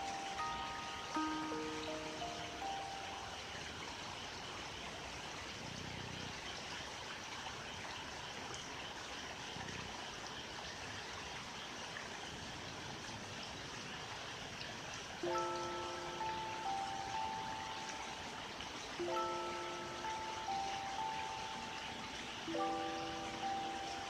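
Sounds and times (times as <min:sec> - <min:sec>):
stream water rushing: 0:00.0 - 0:04.7, 0:14.0 - 0:24.0
faint low frog calls: 0:00.0 - 0:24.0.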